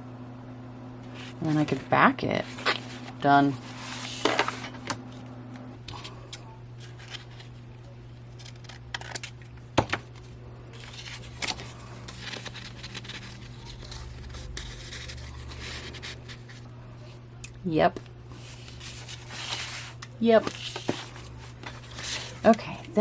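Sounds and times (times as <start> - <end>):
paper scraping and tapping: 2.4 - 5.0, 10.8 - 16.6, 18.4 - 22.8.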